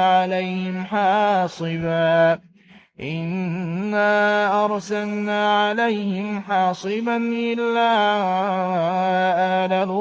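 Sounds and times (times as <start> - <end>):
man reciting melodically: 0.0 - 10.0.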